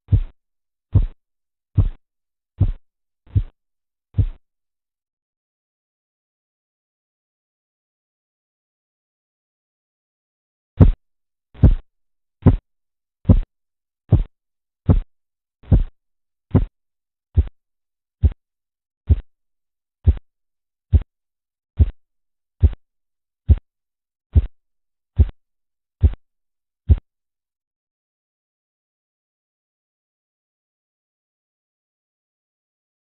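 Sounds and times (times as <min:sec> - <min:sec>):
pulse beats through stethoscope: 0:00.1 - 0:01.2, 0:01.8 - 0:02.0, 0:02.6 - 0:03.6, 0:04.2 - 0:04.4, 0:10.8 - 0:11.0, 0:11.6 - 0:11.8, 0:12.4 - 0:12.6, 0:13.3 - 0:13.5, 0:14.1 - 0:14.3, 0:14.9 - 0:16.7, 0:17.4 - 0:17.6, 0:19.1 - 0:19.3, 0:20.0 - 0:20.2, 0:21.8 - 0:22.0, 0:22.6 - 0:22.8, 0:24.4 - 0:24.6, 0:25.2 - 0:25.4, 0:26.0 - 0:26.2.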